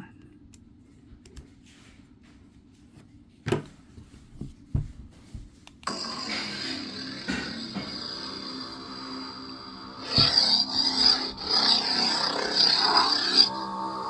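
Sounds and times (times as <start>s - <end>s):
electronic hum with high tone: 5.9s - 14.0s.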